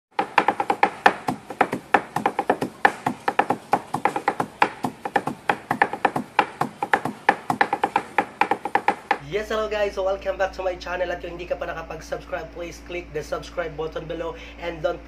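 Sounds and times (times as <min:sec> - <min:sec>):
fast rhythmic chopping on a board: 0:00.1 - 0:09.2.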